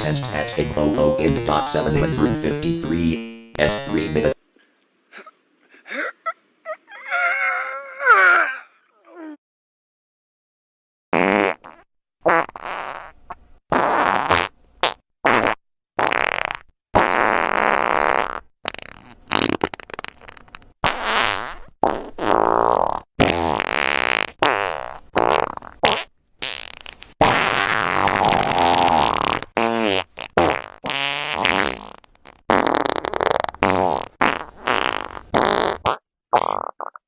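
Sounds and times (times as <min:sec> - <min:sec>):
fart sound effects: 0:11.2 - 0:37.0.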